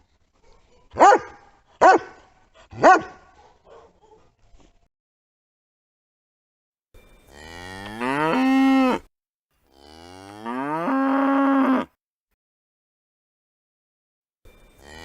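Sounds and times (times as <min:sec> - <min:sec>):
cow mooing: 0:07.3 - 0:09.1, 0:09.7 - 0:11.9.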